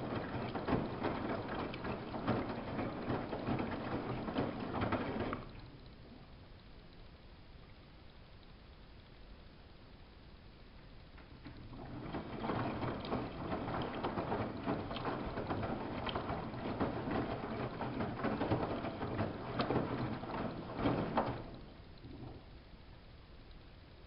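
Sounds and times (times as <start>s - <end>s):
laundry clatter: 0.0s - 5.6s, 11.2s - 22.5s
washing machine drum turning: 0.0s - 5.6s, 11.2s - 22.4s
water splashing: 11.2s - 22.7s.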